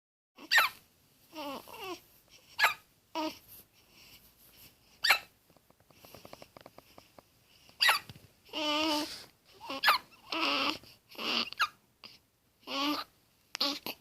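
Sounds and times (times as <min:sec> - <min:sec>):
baby hiccuping: 0:00.4 - 0:00.8, 0:07.8 - 0:08.1, 0:09.6 - 0:14.0
baby babbling softly: 0:00.4 - 0:03.5, 0:07.8 - 0:14.0.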